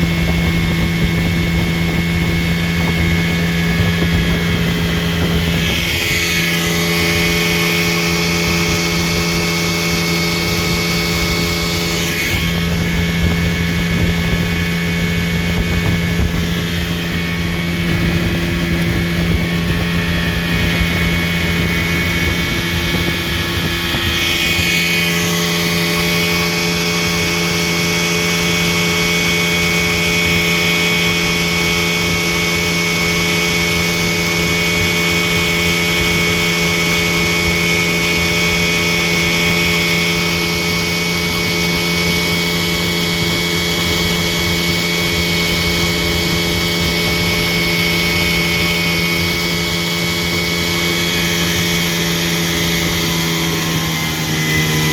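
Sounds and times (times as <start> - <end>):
outboard motor running: 0.0 - 54.9
wind and water rumble: 0.0 - 54.9.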